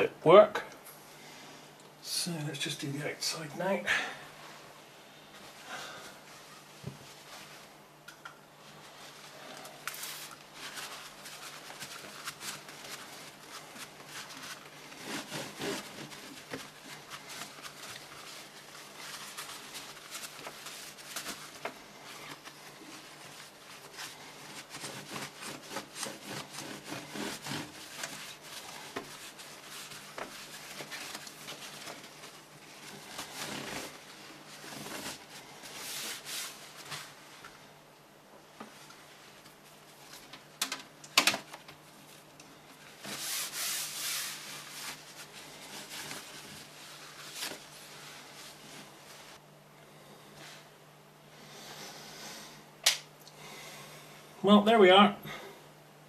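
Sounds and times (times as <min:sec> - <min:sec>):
hands rubbing and scraping: 0:08.6 - 0:37.4, 0:42.8 - 0:49.4.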